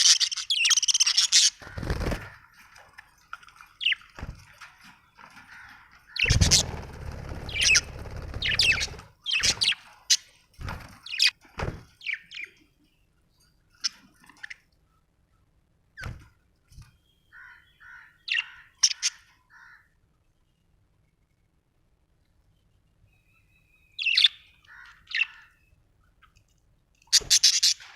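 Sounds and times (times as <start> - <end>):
budgerigar chirping and squawking: 6.2 - 6.8, 7.5 - 9.8, 17.4 - 19.2, 27.1 - 27.9.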